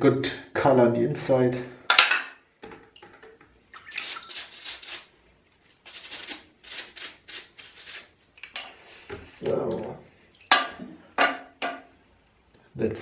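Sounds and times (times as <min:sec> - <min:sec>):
soapy water splashing in a basin: 0:03.7 - 0:05.0.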